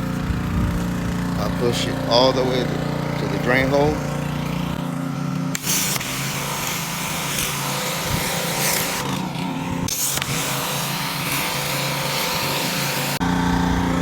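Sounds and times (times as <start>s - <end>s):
pressure washer engine running: 0.0s - 14.0s
water jet hissing on pavement: 5.5s - 13.2s.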